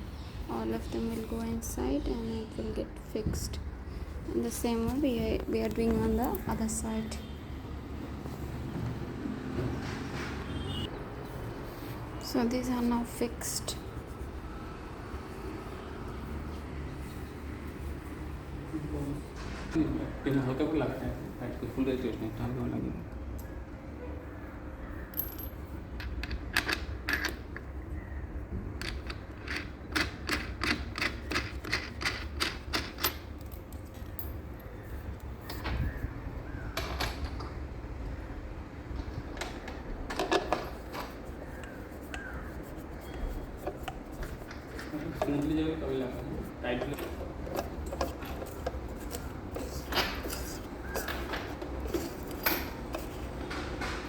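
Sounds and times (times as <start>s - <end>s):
furniture parts clicking and knocking: 28.4s - 34.4s, 39.0s - 54.0s.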